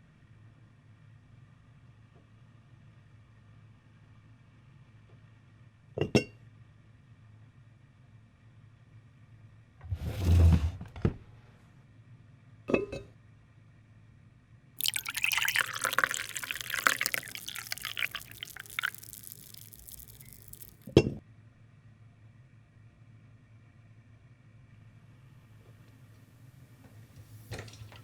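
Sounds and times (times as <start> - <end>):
liquid pouring into a cup: 14.8 - 20.9.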